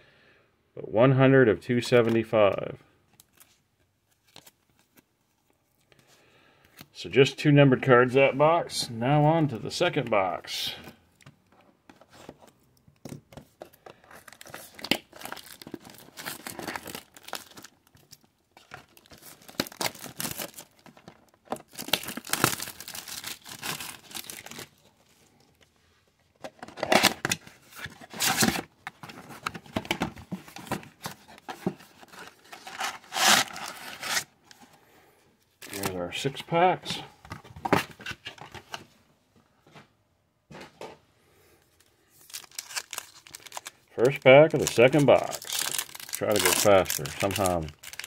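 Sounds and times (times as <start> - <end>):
card packs handled: 1.8 - 6.9, 9.4 - 25.7, 26.3 - 34.8, 35.4 - 39.0, 41.6 - 48.0
plastic wrap tearing and crinkling: 14.2 - 24.8, 32.0 - 34.4, 42.1 - 48.0
cardboard box opening: 26.5 - 34.4.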